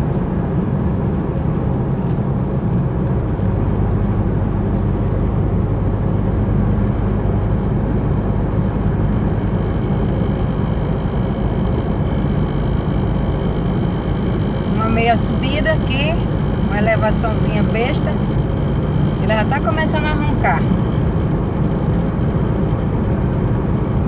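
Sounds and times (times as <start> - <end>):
engine and drivetrain drone: 0.0 - 24.0
faint high whine: 8.0 - 24.0.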